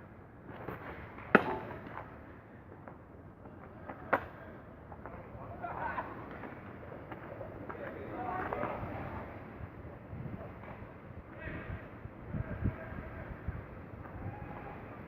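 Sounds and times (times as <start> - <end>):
faint voices: 11.2 - 15.0.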